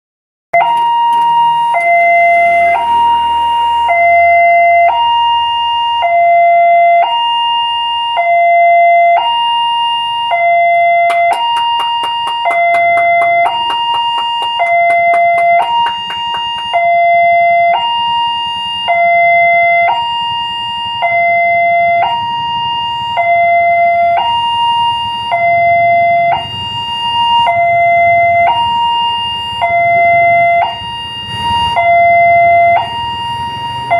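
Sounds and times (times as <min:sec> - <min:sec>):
level-crossing two-tone alarm: 0:00.6 - 0:33.9
quick clacks: 0:11.0 - 0:17.0.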